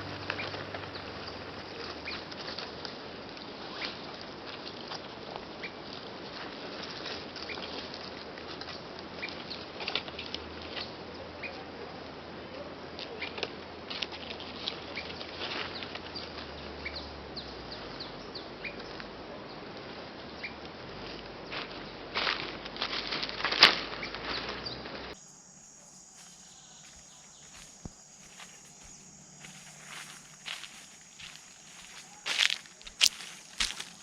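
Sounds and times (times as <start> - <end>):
bird chirping: 0.0 - 2.6, 24.0 - 34.0
leaves and twigs crackling: 0.0 - 11.0, 19.7 - 34.0.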